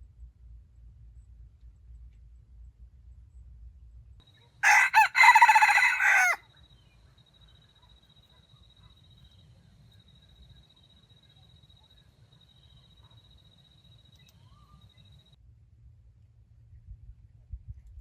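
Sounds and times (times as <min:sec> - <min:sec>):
rooster crowing: 0:04.6 - 0:06.4.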